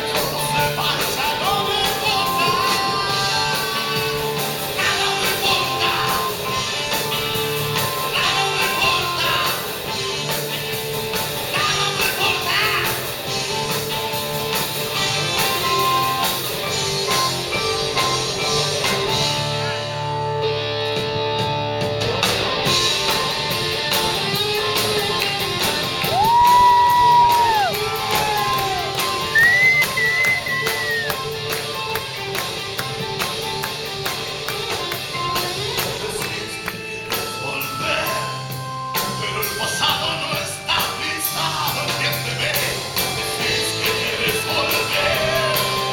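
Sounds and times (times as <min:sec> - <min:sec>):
person singing: 0:00.0 - 0:07.2, 0:07.8 - 0:10.1, 0:11.4 - 0:13.2, 0:26.0 - 0:31.3, 0:35.2 - 0:45.9
electric guitar: 0:00.0 - 0:45.9
hard rock band playing live: 0:00.0 - 0:45.9.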